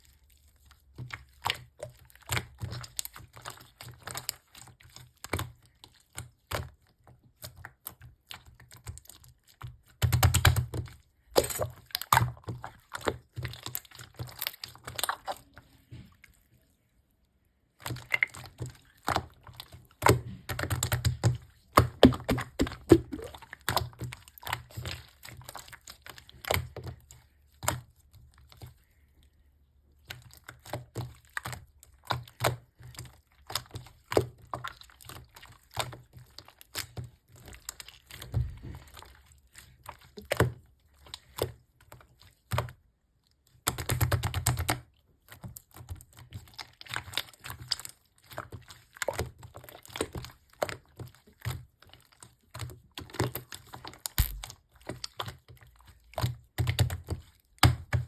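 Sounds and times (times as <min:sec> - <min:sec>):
bubble wrap popping: 0:54.1 - 0:54.5.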